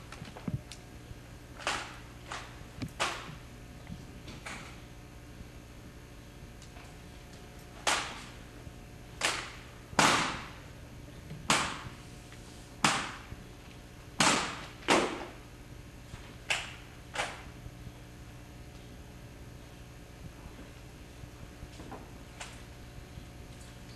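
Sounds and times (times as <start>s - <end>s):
rifles slapped in hand: 1.6s - 3.3s, 7.8s - 8.3s, 9.2s - 10.6s, 11.5s - 11.9s, 12.8s - 13.3s, 14.2s - 15.3s.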